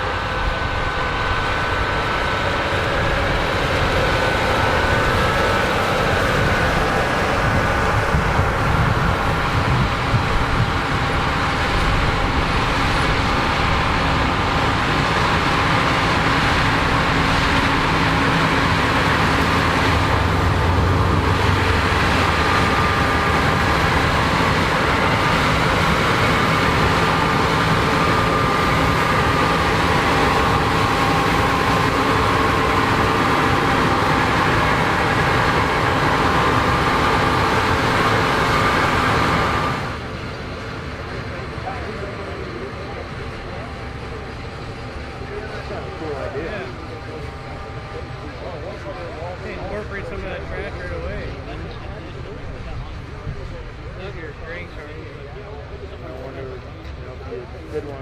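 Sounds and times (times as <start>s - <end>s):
combine harvester machinery: 0.0s - 58.0s.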